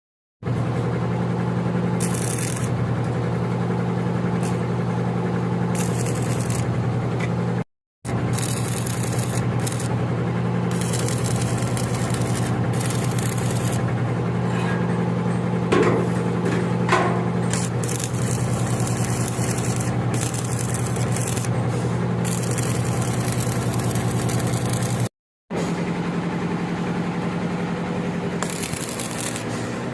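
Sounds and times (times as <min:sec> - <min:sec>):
welding machine humming: 0:00.4 - 0:25.1, 0:26.0 - 0:29.9
welding arc hissing crackle: 0:02.0 - 0:02.8, 0:05.7 - 0:06.7, 0:08.1 - 0:09.9, 0:10.6 - 0:13.9, 0:17.4 - 0:21.5, 0:22.2 - 0:25.1, 0:28.4 - 0:29.9.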